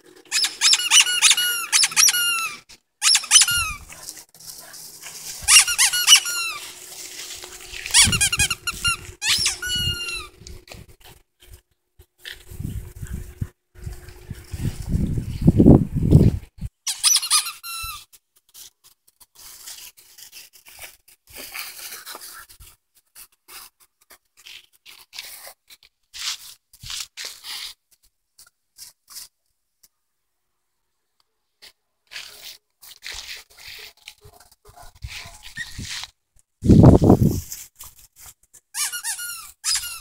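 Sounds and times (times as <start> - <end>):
puppy squealing: 0.3 - 3.9, 5.4 - 6.7, 7.9 - 10.4, 16.9 - 18.0, 38.8 - 40.0
scratchy noises: 3.2 - 11.2, 32.1 - 38.4.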